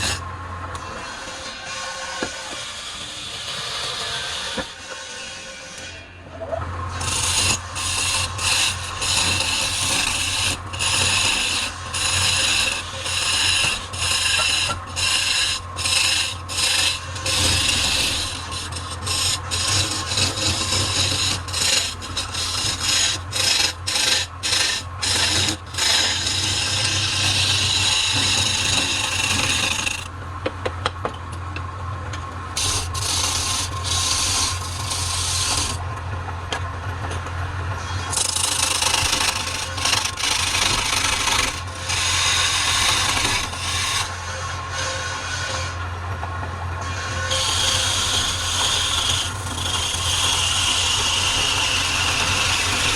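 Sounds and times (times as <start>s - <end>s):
tool scraping spinning wood: 0.0s - 30.2s, 32.6s - 35.8s, 37.8s - 45.6s, 47.0s - 52.9s
wood lathe motor hum: 6.9s - 30.1s, 32.6s - 35.8s, 38.0s - 44.3s, 47.2s - 52.9s.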